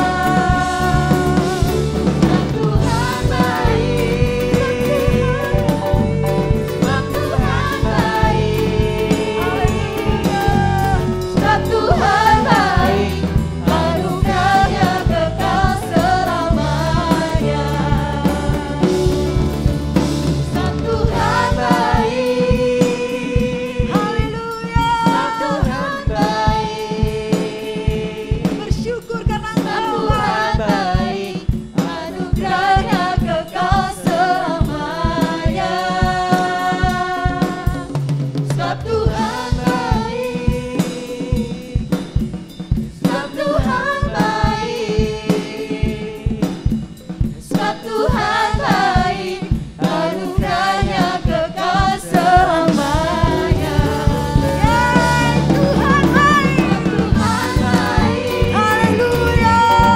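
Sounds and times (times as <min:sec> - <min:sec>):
drum kit beat: 0:00.0 - 0:59.9
voices singing worship music: 0:00.0 - 0:59.9.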